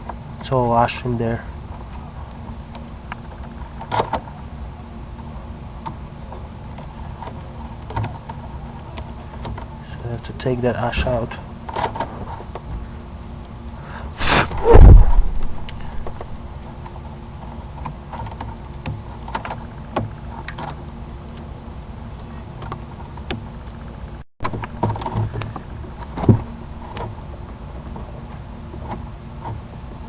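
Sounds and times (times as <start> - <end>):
loud bump: 14.2 - 16.5.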